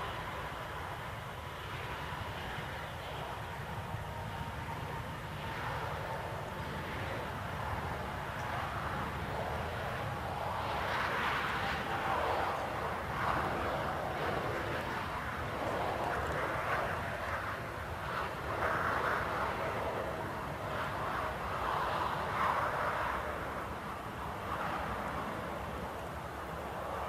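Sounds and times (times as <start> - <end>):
jet engines rushing: 0.0 - 27.0.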